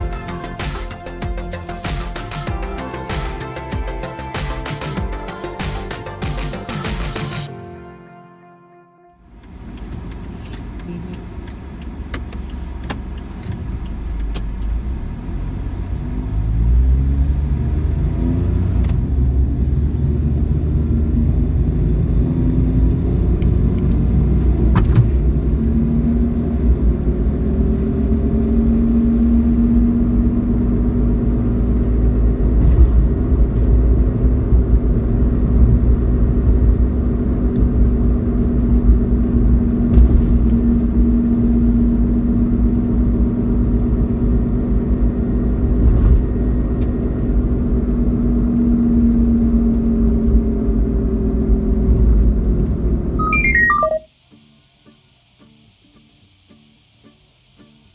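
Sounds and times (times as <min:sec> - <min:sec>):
car driving on road: 0:09.2 - 0:53.8.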